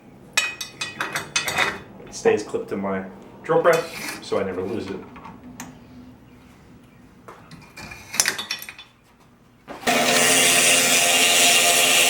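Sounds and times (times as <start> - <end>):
power tool running: 9.8 - 12.0.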